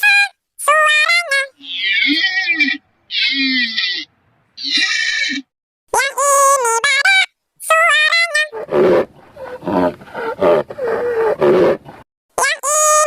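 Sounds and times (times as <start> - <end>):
high-pitched cartoon singing voice: 0.0 - 8.7, 12.4 - 13.0
animal roaring in rough growls: 8.6 - 12.0.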